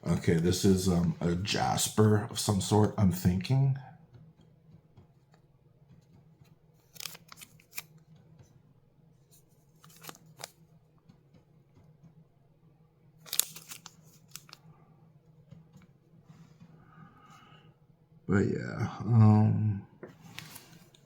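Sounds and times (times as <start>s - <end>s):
faint low hum: 0.0s - 21.0s
stones clicking: 6.8s - 7.8s, 13.2s - 14.6s
plastic bags crinkling: 13.3s - 14.6s.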